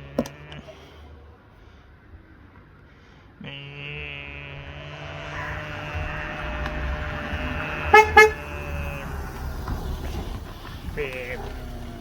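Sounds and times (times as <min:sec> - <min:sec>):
long steady tone: 0:03.5 - 0:08.6
car rumbling pulling up: 0:04.4 - 0:12.0
car horn toots: 0:05.2 - 0:09.4.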